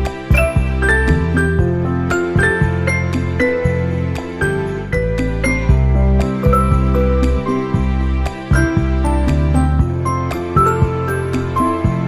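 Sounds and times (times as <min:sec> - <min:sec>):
gentle instrumental music: 0:00.0 - 0:12.0.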